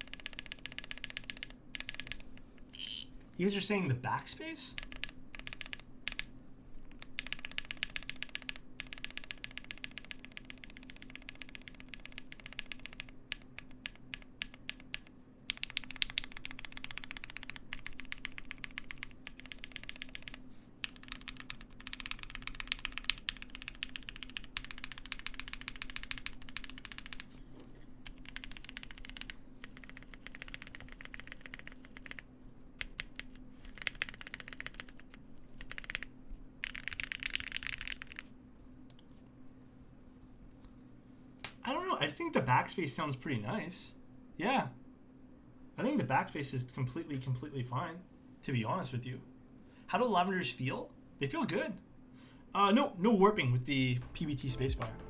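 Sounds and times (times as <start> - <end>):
mechanical keyboard typing: 0.0 - 2.4, 4.7 - 6.3, 6.9 - 27.4, 28.0 - 38.3.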